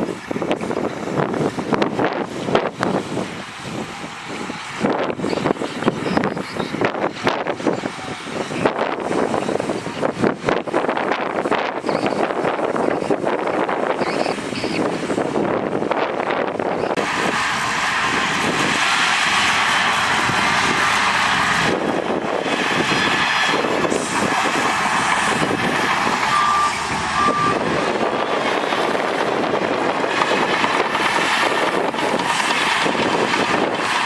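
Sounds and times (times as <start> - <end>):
heavy diesel machinery running: 0.0 - 11.5, 12.6 - 34.0
reversing alarm beeps: 26.1 - 28.7.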